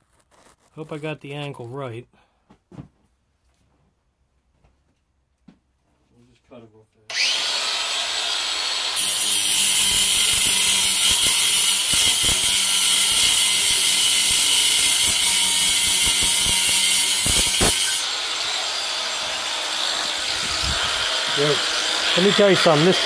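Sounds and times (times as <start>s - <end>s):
cutting tool hissing through steel: 7.1s - 23.0s.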